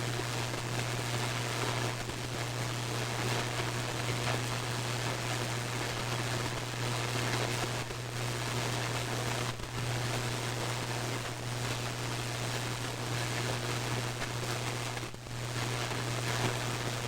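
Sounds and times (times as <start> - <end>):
faint static crackles: 0.0 - 17.0.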